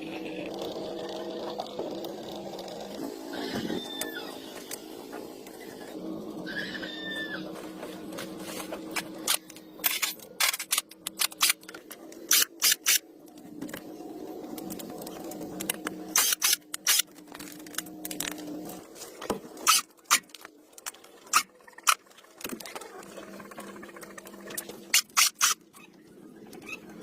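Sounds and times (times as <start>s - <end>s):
steady low hum: 0.0s - 27.0s
metal tools clicking and scraping: 9.2s - 13.0s.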